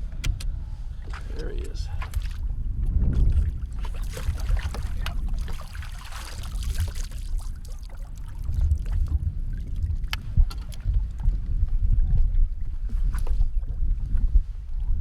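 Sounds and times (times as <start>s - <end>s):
wind buffeting microphone: 0.0s - 15.0s
water washing: 3.4s - 8.7s.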